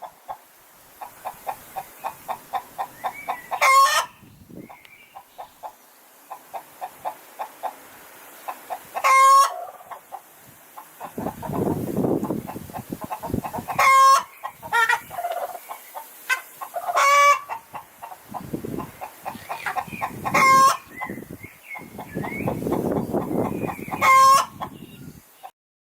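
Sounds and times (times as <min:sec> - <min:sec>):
chickens clucking: 0:00.0 - 0:25.5
chicken squawks: 0:01.0 - 0:04.8, 0:08.7 - 0:10.1, 0:11.0 - 0:24.8.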